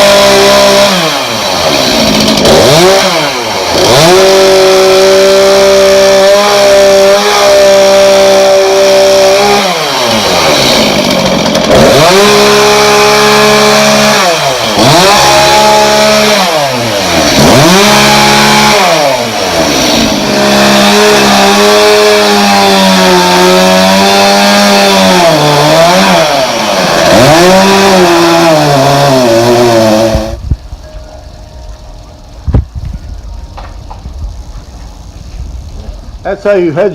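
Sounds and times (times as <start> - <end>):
chainsaw cutting wood: 0.0 - 30.8.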